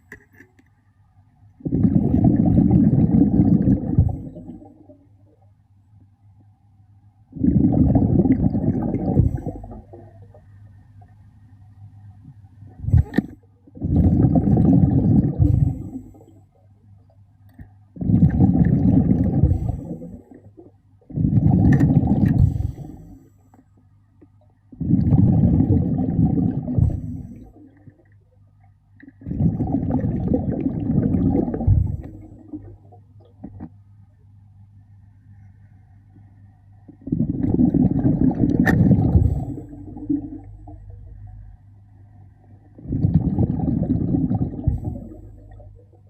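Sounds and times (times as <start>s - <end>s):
underwater regulator bubbling: 1.6s - 5.0s, 7.3s - 10.5s, 12.7s - 16.3s, 17.5s - 23.2s, 24.7s - 28.1s, 29.0s - 33.7s, 36.8s - 41.6s, 42.6s - 46.0s.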